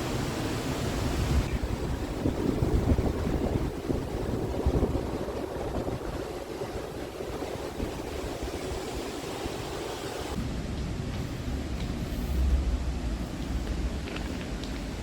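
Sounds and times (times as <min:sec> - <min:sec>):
waterfall rushing: 0:00.0 - 0:10.6.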